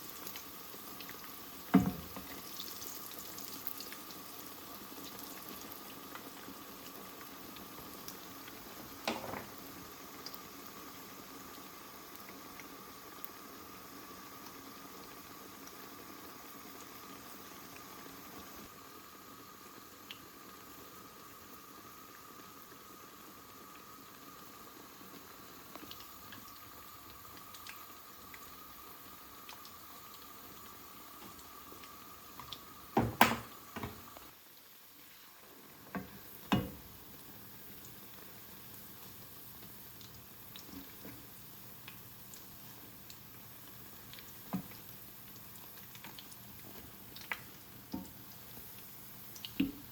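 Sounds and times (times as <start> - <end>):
food bubbling in a pot: 0.0 - 49.9.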